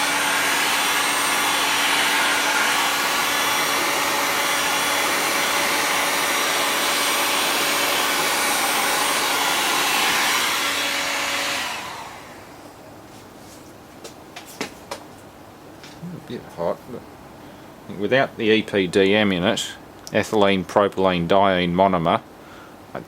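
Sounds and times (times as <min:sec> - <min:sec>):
heat gun blowing air: 0:00.0 - 0:12.6.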